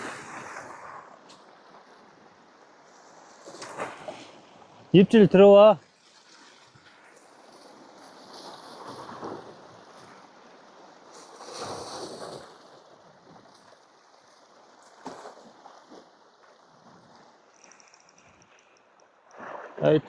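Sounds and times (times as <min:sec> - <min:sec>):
waves washing against rocks: 0:06.0 - 0:20.0.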